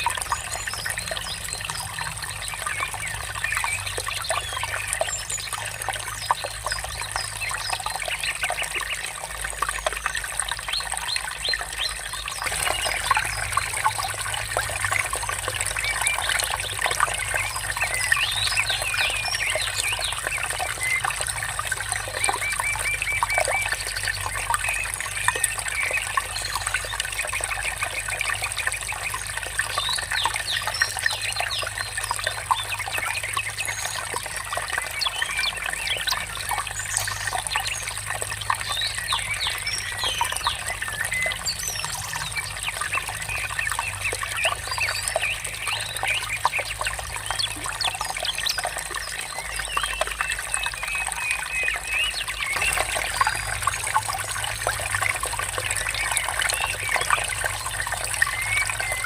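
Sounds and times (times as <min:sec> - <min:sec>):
songbirds chirping and trilling: 0:00.0 - 0:59.0
stream water trickling: 0:00.0 - 0:59.0.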